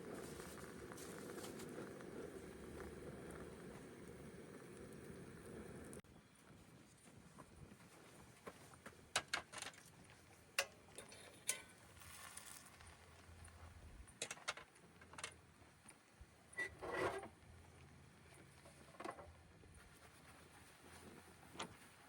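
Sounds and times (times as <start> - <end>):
soft rustle: 0.0 - 3.6, 11.8 - 13.9, 19.6 - 22.0.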